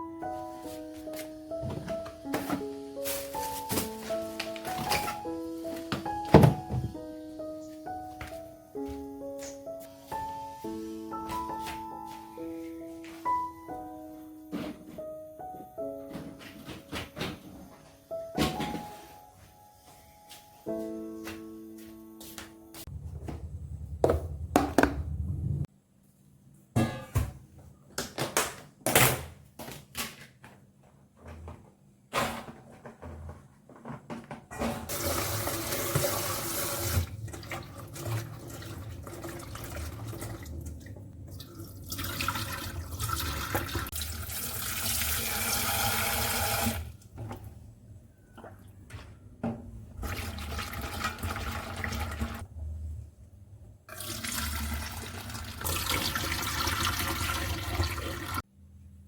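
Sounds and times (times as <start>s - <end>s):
tap water running into sink: 34.9s - 46.9s, 50.0s - 52.4s, 53.9s - 58.4s.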